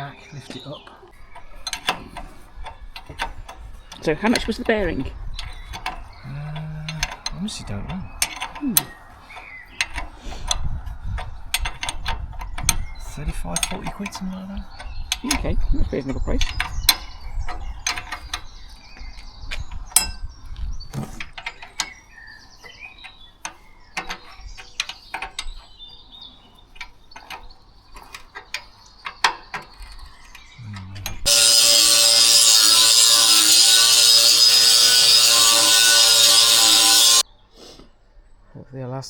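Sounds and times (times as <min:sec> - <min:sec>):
hand tools clicking and knocking: 0:00.0 - 0:37.2
power tool running: 0:31.0 - 0:37.2.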